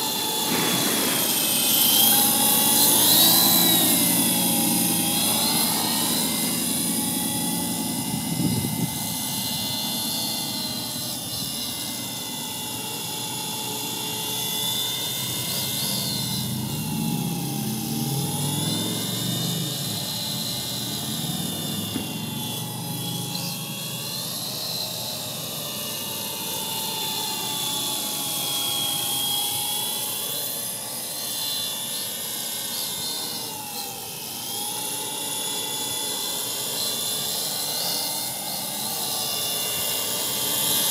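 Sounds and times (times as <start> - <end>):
helicopter motor and rotor whining: 0.0 - 40.9
wind rumble on microphone: 8.0 - 9.6.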